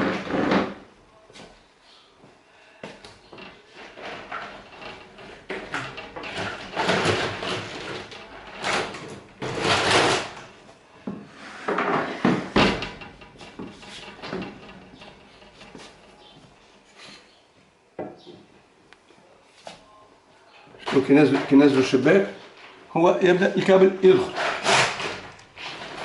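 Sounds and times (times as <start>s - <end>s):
roller shutter clattering down: 3.4s - 10.6s, 11.6s - 16.8s, 24.1s - 26.0s.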